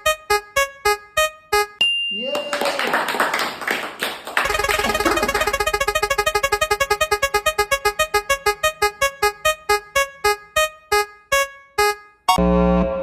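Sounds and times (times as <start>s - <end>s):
repeated electronic keyboard note: 0.0s - 1.8s, 4.4s - 12.8s.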